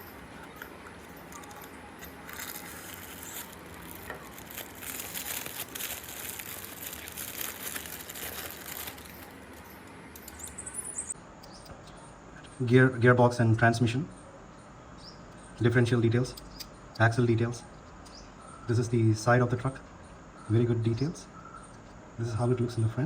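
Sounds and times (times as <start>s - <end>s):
toy packaging rustling and crinkling: 0.0s - 9.8s.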